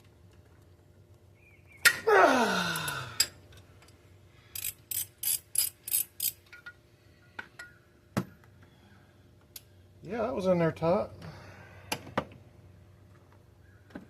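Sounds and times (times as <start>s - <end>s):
socket ratchet clicking: 4.5s - 6.5s.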